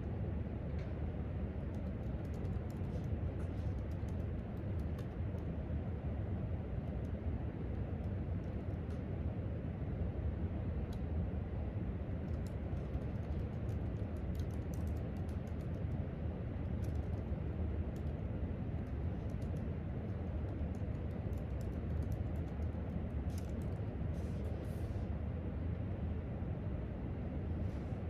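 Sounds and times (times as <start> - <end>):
low rumble of room noise: 0.0 - 28.0
typing on laptop keyboard: 1.7 - 5.5, 12.2 - 23.8.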